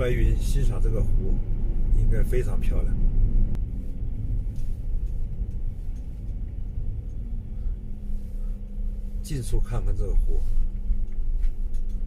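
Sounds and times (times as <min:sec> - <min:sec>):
road rumble: 0:00.0 - 0:12.0
van engine hum: 0:00.0 - 0:12.0.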